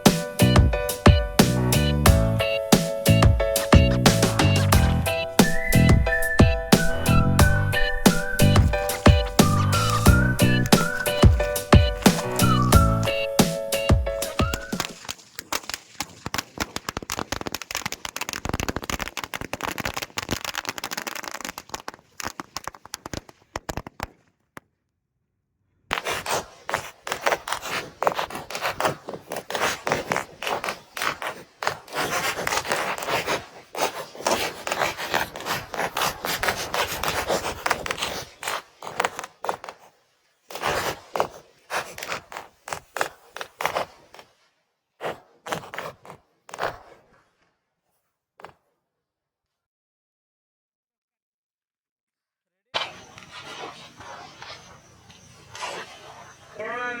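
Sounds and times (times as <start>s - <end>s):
firecrackers crackling: 0.0s - 24.6s, 25.9s - 39.9s, 52.8s - 57.0s.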